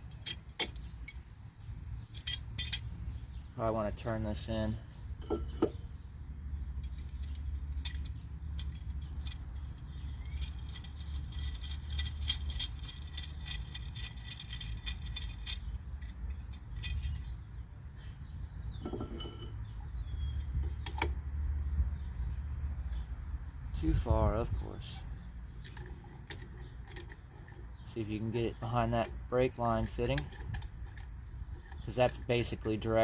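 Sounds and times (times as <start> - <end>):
metal clamp clinking and ticking: 2.1 - 3.0, 6.8 - 17.4, 25.5 - 27.8, 28.6 - 32.8.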